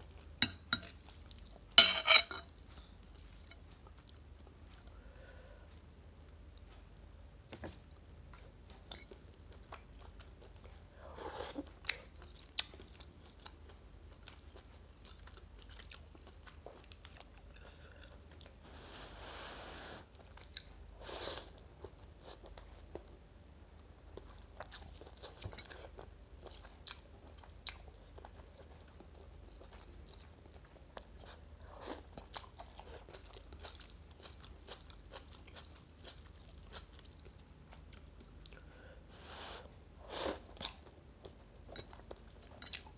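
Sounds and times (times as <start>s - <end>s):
chewing and mouth sounds: 24.2s - 38.7s.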